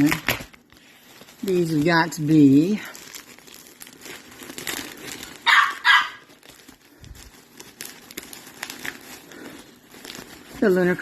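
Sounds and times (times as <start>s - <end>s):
packaging rustling and crinkling: 0.0s - 11.0s
dog barking: 5.4s - 6.3s.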